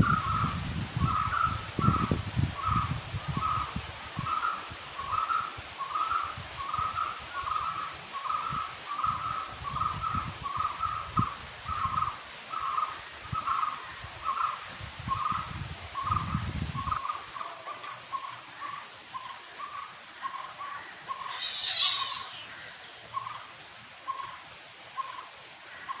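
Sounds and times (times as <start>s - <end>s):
bird calling: 16.0s - 23.5s, 24.1s - 24.4s.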